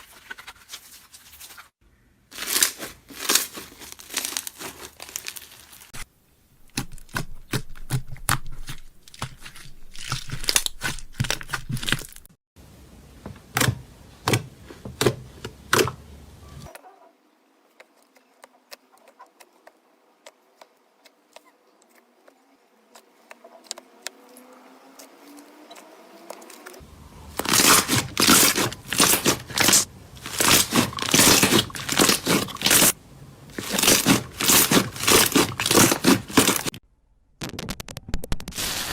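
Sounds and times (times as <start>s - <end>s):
slime crackling and popping: 2.4s - 6.0s, 27.3s - 36.8s, 37.4s - 38.7s.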